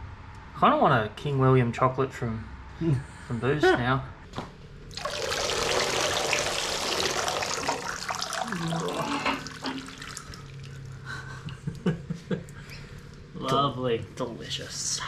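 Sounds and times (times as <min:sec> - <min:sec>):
oil pouring and trickling: 0:04.9 - 0:11.1.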